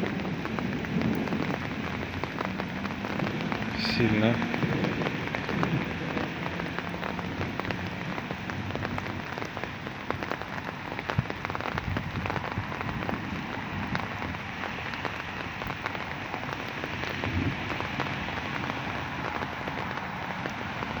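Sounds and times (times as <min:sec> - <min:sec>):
steady rain falling: 0:00.0 - 0:21.0.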